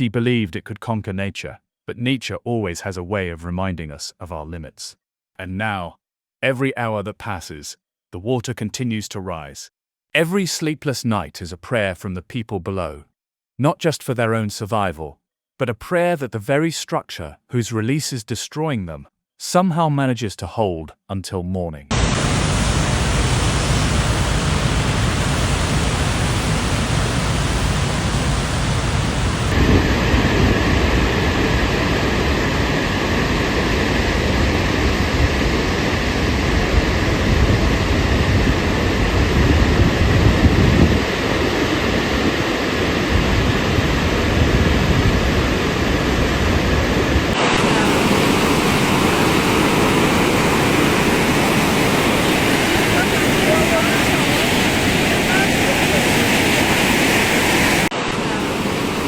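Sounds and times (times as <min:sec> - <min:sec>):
roar of rushing water: 0:21.9 - 0:59.0.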